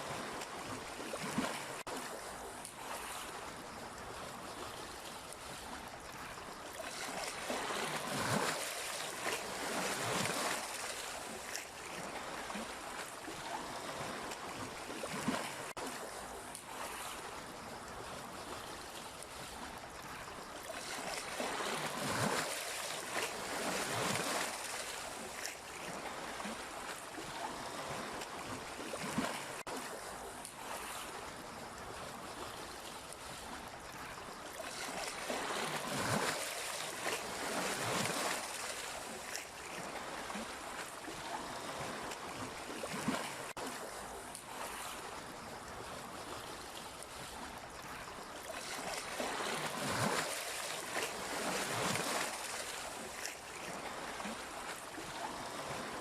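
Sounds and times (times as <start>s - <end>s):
sea waves washing in: 0.0s - 56.0s.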